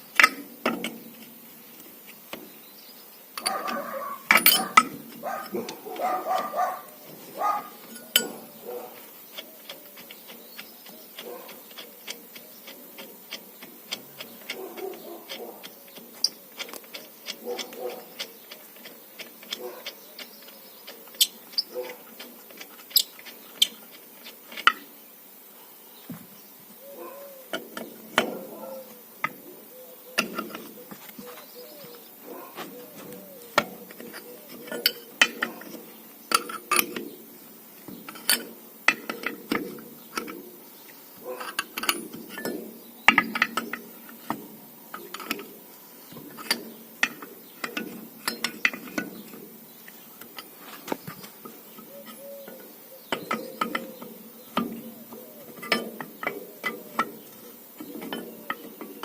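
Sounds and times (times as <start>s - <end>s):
metallic clicks from hand tools: 41.4s - 45.5s.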